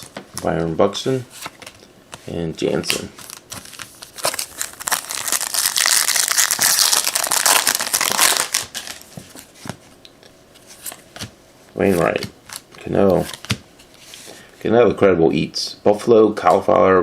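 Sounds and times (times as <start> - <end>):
wrapper tearing and crinkling: 3.2 - 9.1.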